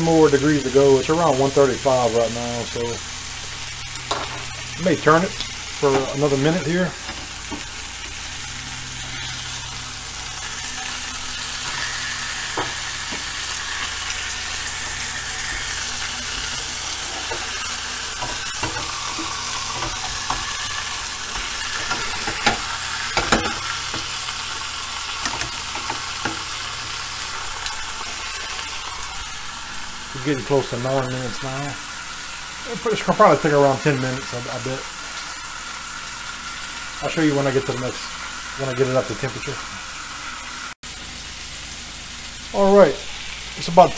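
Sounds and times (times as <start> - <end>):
meat sizzling in a frying pan: 0.0 - 43.9.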